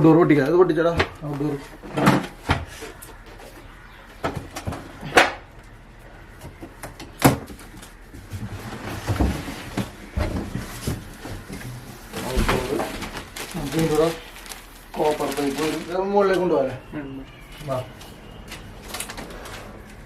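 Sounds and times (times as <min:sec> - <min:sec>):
rumbling handling noise: 0:00.8 - 0:16.5.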